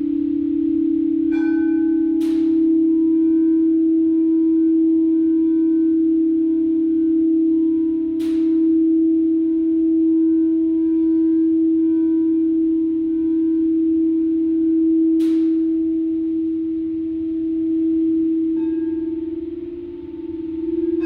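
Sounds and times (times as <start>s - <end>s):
higher bowl tone: 0.0s - 21.0s
singing bowl low tone: 0.0s - 21.0s
bright tap on singing bowl: 1.3s - 3.0s, 15.2s - 15.8s.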